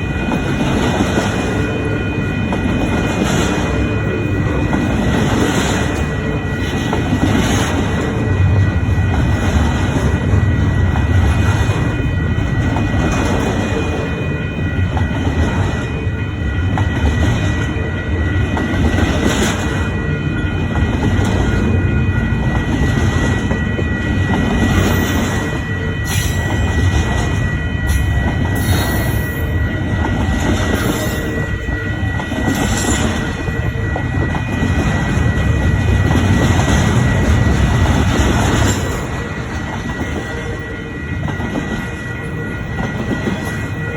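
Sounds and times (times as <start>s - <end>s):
train wheels rumbling on rails: 0.0s - 43.9s
high squeal from wheels: 18.3s - 43.9s.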